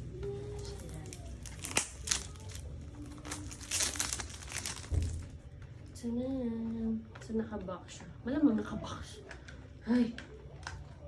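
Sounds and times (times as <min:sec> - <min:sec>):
plastic packaging crinkling: 0:00.4 - 0:05.4.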